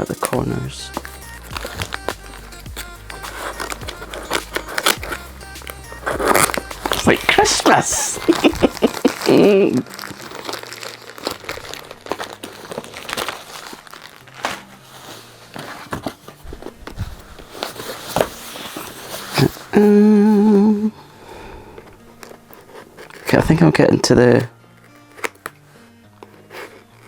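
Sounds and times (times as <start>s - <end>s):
tape being cut: 0.0s - 14.8s, 24.4s - 25.6s
packaging crinkling and rustling: 0.0s - 20.2s, 21.6s - 27.0s
person humming: 0.8s - 10.0s, 19.4s - 21.7s.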